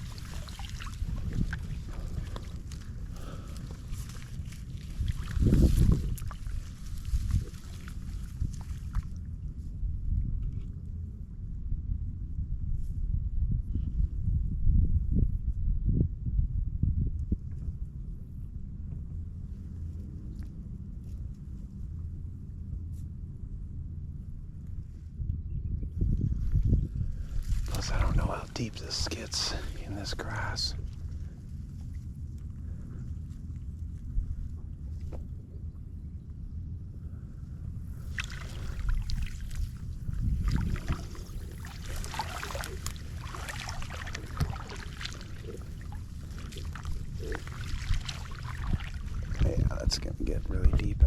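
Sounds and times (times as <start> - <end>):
grass rustling: 0.0 - 9.1, 37.9 - 49.4
water sloshing and splashing: 0.0 - 9.4, 27.2 - 35.4, 37.9 - 49.6
steady low rumble: 0.0 - 51.0
wind buffeting microphone: 0.0 - 51.0.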